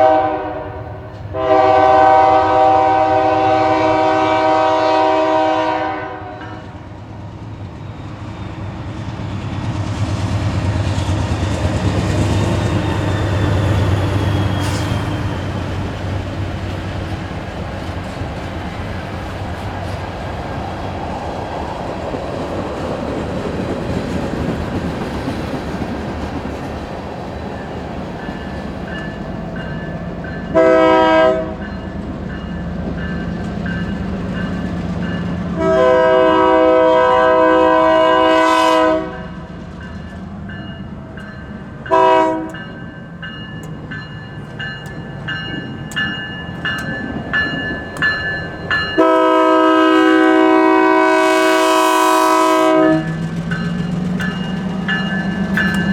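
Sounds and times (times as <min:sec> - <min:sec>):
locomotive horn blast: 0:00.0 - 0:06.8, 0:30.5 - 0:31.6, 0:35.5 - 0:39.5, 0:41.9 - 0:42.6, 0:49.0 - 0:53.2
train wheels clattering on rails: 0:06.5 - 0:35.9, 0:39.5 - 0:51.0, 0:52.7 - 0:55.9.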